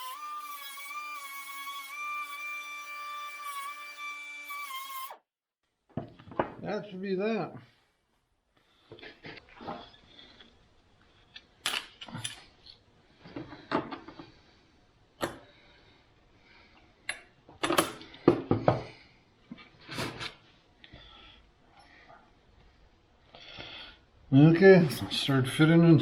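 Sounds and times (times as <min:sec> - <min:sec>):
hand tools set down: 0:05.9 - 0:06.6, 0:13.3 - 0:14.3, 0:17.1 - 0:18.9.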